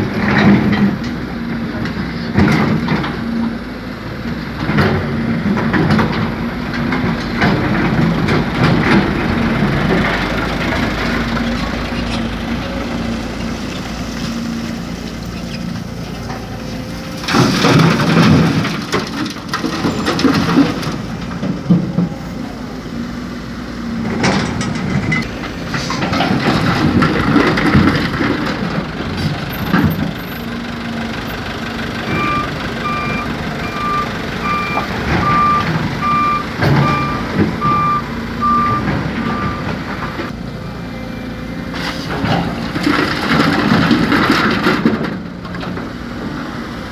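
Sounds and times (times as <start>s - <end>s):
diesel engine running: 0.0s - 46.9s
excavator loading soil: 0.0s - 46.9s
back-up alarm beeping: 32.1s - 39.8s.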